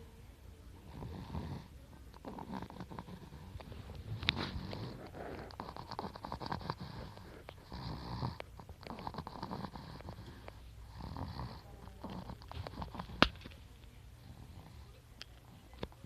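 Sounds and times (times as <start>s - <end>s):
child snoring: 0.9s - 3.6s, 4.5s - 13.2s.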